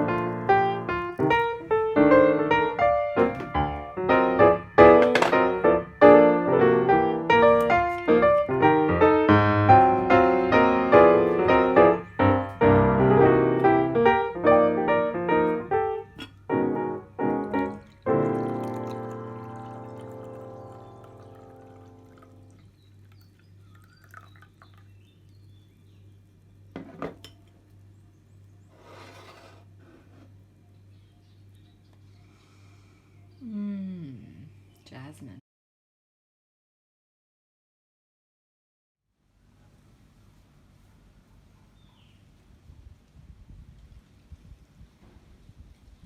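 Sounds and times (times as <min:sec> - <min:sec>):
piano music: 0:00.0 - 0:22.6
clinks and knocks of crockery: 0:04.9 - 0:05.6.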